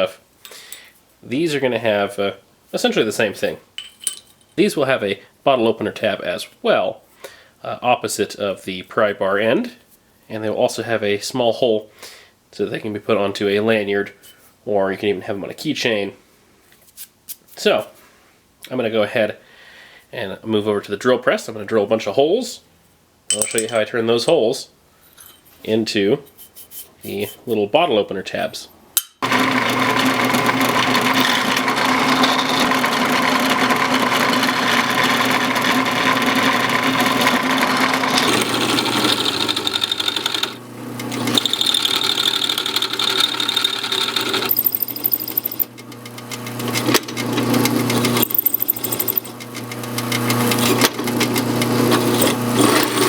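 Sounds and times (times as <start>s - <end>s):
drill press drilling steel: 29.2s - 53.0s.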